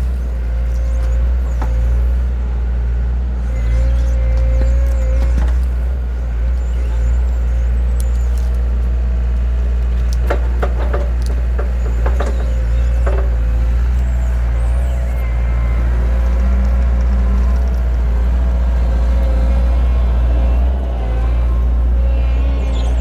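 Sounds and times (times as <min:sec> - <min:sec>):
short squeaks: 0:00.0 - 0:02.4, 0:03.4 - 0:23.0
heavy machine engine droning: 0:00.0 - 0:23.0
wood cracking: 0:07.3 - 0:20.8.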